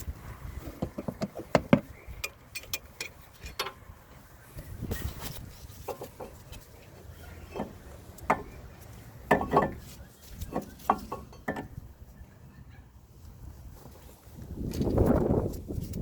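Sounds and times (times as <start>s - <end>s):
metal brake parts clinking: 5.8s - 11.8s.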